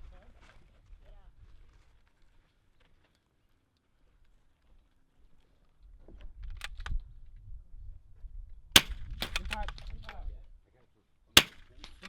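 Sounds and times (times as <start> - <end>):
wind rumble on microphone: 0.0 - 1.9, 5.8 - 10.6
rifle shot: 8.8 - 10.2, 11.4 - 12.0.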